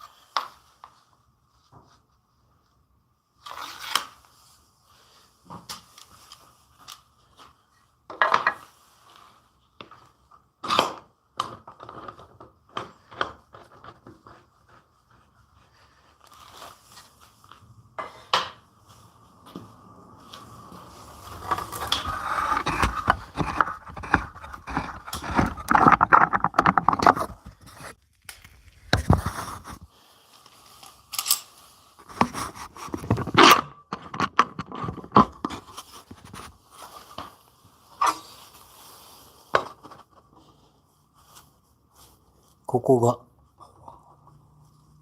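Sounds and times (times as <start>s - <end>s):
wood scraping on workbench: 21.1s - 28.0s, 32.0s - 36.5s
sharp knocks and clicks: 21.5s - 27.6s.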